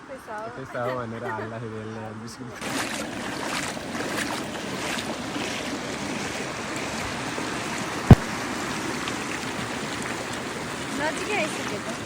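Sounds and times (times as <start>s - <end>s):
brief thump: 8.1s - 8.3s.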